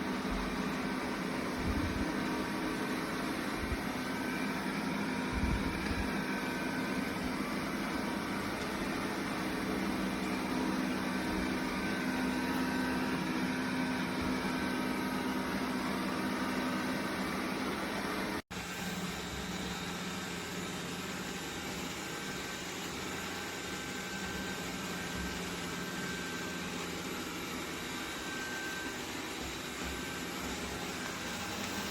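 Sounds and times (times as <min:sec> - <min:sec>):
robot vacuum whirring: 0:18.6 - 0:31.9.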